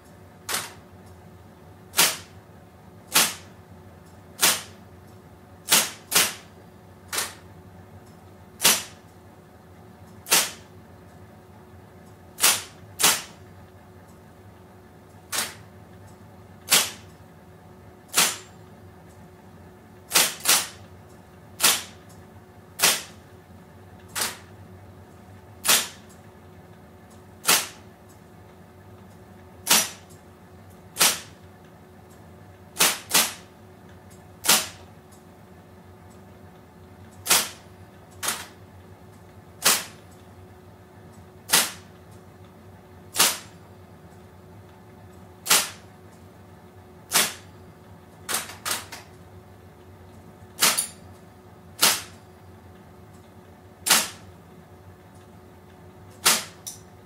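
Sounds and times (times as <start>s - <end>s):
typewriter motor hum: 0.0s - 1.2s, 1.8s - 2.4s, 3.0s - 4.9s, 5.6s - 9.2s, 10.0s - 11.2s, 12.0s - 13.5s, 15.1s - 17.2s, 18.0s - 19.2s, 20.0s - 23.4s, 24.0s - 26.3s, 27.1s - 28.2s, 29.0s - 31.5s, 32.1s - 35.0s, 37.0s - 40.4s, 41.1s - 42.2s, 43.0s - 43.7s, 45.0s - 46.2s, 47.0s - 47.6s, 48.2s - 49.2s, 50.1s - 52.3s, 53.1s - 54.4s, 56.1s - 57.0s.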